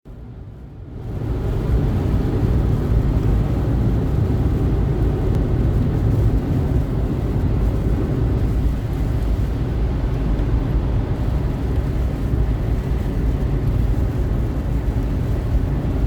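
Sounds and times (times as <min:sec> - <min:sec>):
heavy rain on car: 0:00.2 - 0:16.0.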